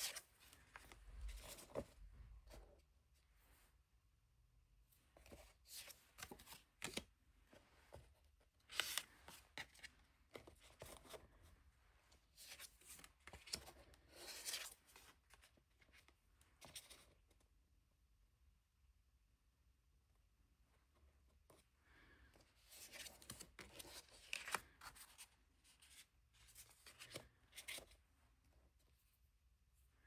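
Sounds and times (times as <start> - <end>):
cards rustling and sliding: 0.0 - 2.0, 5.2 - 11.4, 12.2 - 15.5, 22.6 - 28.0.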